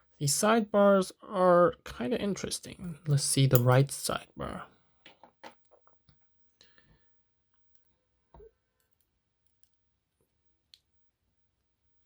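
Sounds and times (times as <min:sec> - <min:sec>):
small metal parts clicking: 0:03.5 - 0:03.8.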